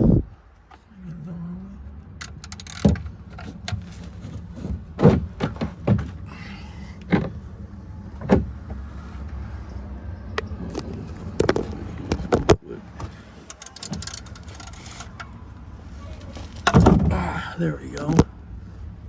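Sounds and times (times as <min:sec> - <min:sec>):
steady low rumble: 0:00.0 - 0:02.4
wrench metallic knocks and clicks: 0:02.2 - 0:03.8, 0:13.4 - 0:15.2.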